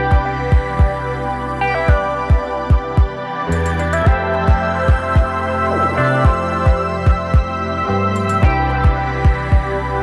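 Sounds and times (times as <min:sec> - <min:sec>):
sustained synth chords: 0:02.4 - 0:09.8
low kick-drum beat: 0:04.1 - 0:05.3, 0:06.2 - 0:07.5.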